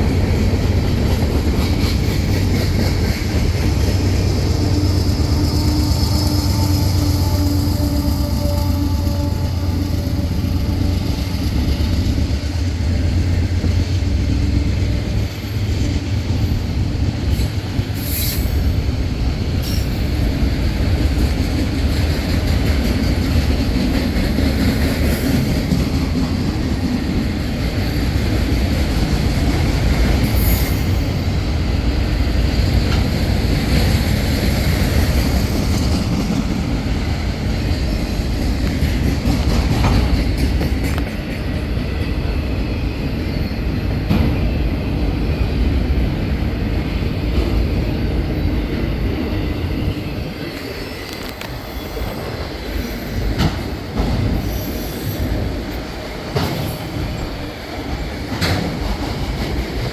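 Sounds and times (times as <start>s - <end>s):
train wheels rumbling on rail: 0.0s - 59.9s
high wheel squeals: 4.3s - 11.6s, 48.4s - 55.6s.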